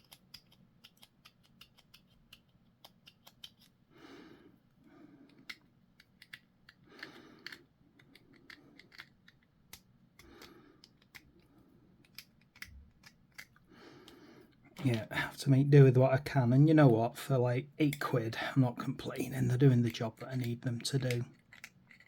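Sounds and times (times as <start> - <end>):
clippers clicking and snipping: 0.0 - 3.7, 5.3 - 11.4, 12.0 - 14.2.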